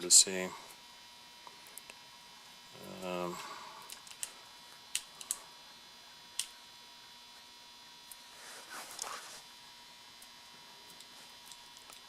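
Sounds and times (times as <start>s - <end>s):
faint electrical hum: 0.0s - 12.0s
brief rustling scrape: 8.3s - 9.5s.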